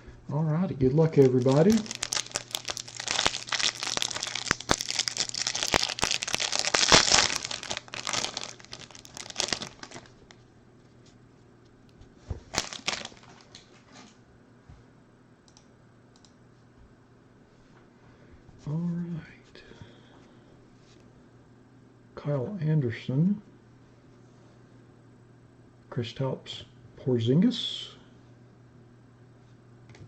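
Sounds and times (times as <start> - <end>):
foil wrapper tearing and crinkling: 1.1 - 10.3, 12.5 - 13.7.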